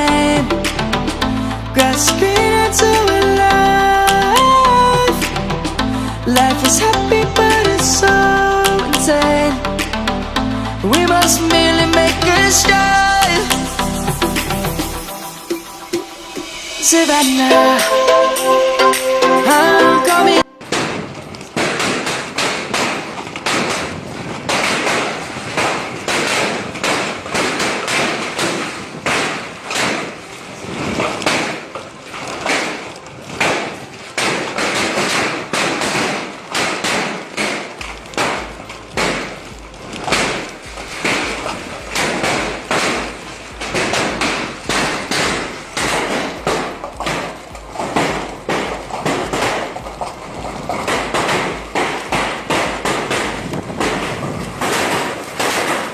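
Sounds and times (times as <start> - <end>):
steady rushing noise: 8.6 - 21.7, 23.0 - 55.9
hailstones pelting down: 21.1 - 55.9.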